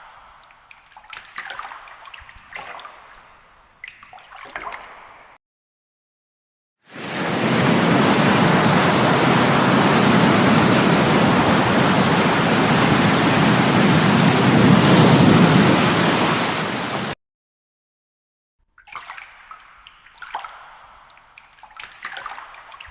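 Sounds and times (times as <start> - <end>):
rushing water: 6.9 - 17.2.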